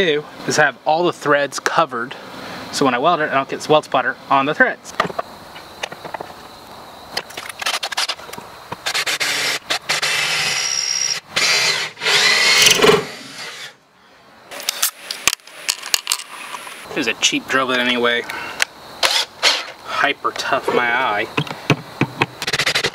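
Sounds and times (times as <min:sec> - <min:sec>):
electric drill boring into steel: 0:08.8 - 0:13.8.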